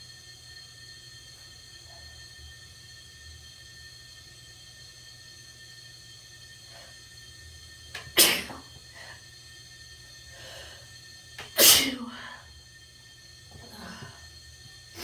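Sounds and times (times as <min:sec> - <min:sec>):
person sneezing: 0:08.0 - 0:08.7, 0:11.4 - 0:12.4
short breath: 0:10.3 - 0:10.9.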